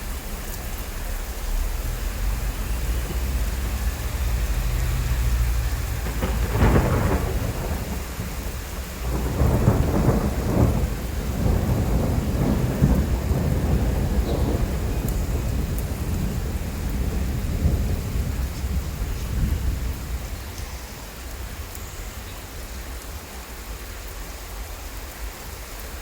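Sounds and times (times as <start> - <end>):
thunder rumbling: 0.0 - 21.7
steady rain: 0.0 - 26.0.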